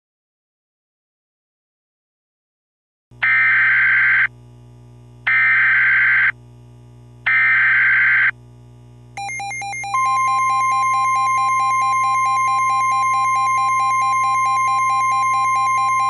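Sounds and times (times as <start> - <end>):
steady low hum: 4.3 - 9.3
screechy digital data tones: 9.9 - 16.0.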